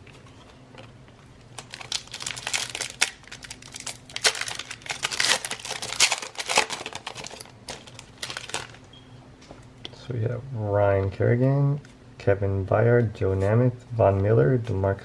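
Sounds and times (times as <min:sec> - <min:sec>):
plastic wrapper crinkling and tearing: 0:01.4 - 0:08.8.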